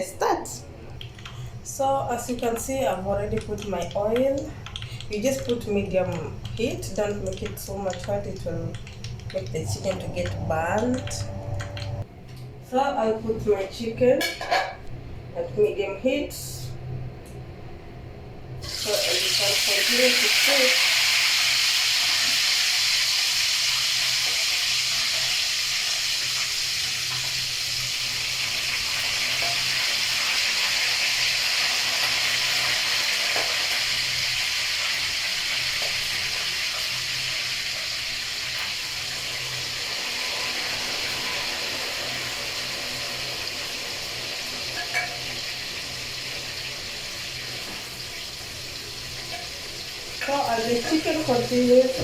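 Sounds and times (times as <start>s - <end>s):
chicken deep-frying in oil: 18.6s - 52.0s.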